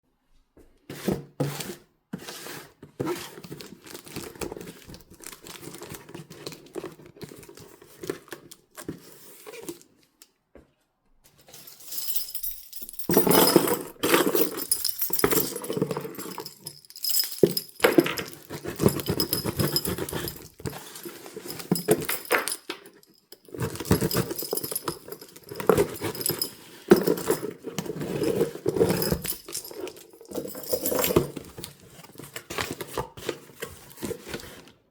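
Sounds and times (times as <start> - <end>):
packaging rustling and crinkling: 3.3 - 9.8, 14.0 - 34.8.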